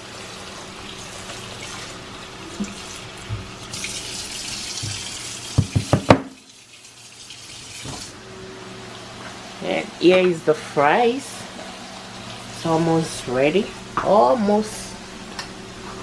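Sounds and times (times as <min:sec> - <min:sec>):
water running from a tap: 0:00.0 - 0:08.2.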